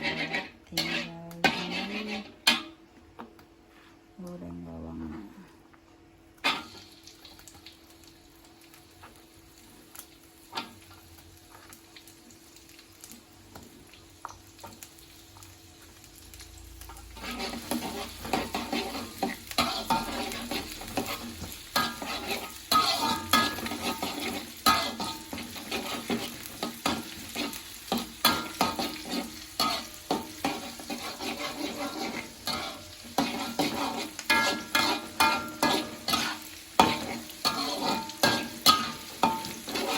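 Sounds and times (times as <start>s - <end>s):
onion sizzling in hot oil: 0.0s - 2.8s, 6.4s - 39.9s
spatula scraping a pan: 0.0s - 2.8s, 16.9s - 39.9s.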